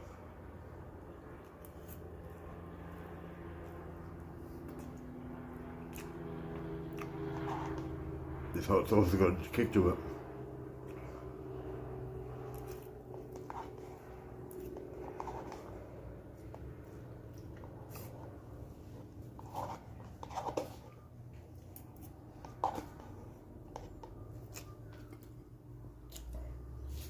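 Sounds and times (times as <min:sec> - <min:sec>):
steady low hum: 0:00.0 - 0:27.0
person chewing and eating: 0:05.8 - 0:08.1, 0:11.9 - 0:27.0.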